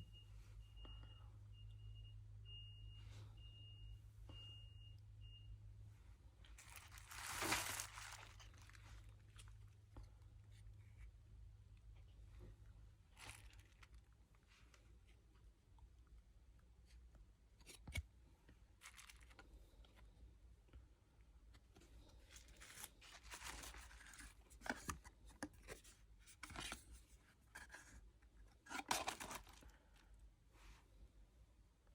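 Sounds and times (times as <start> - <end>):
packaging tearing: 6.6 - 8.8
packaging scrapes: 6.6 - 9.0, 22.4 - 24.4, 28.7 - 29.7
packaging rustling: 6.6 - 9.2, 13.1 - 14.0, 18.8 - 19.4, 22.3 - 24.9, 28.7 - 29.7.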